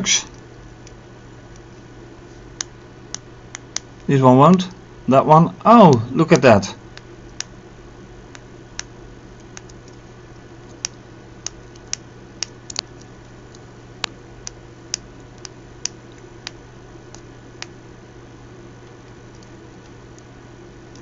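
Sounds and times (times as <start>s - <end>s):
steady low hum: 0.0s - 21.0s
light clicks of keypad: 10.7s - 17.8s.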